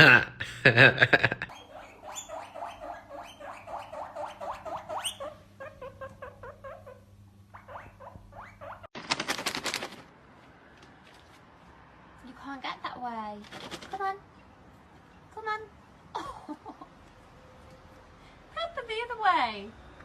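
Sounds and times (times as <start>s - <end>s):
small animal squeaking: 1.5s - 8.9s.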